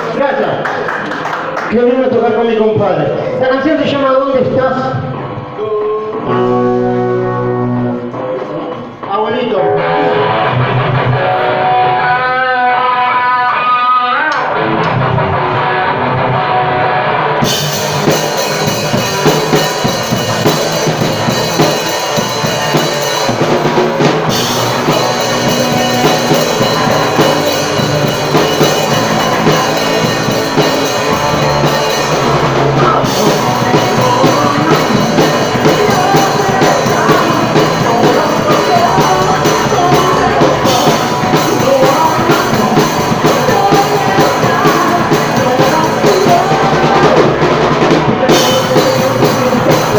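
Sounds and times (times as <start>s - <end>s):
rock band playing: 0.0s - 49.9s
drum kit beat with cymbals: 17.4s - 49.9s.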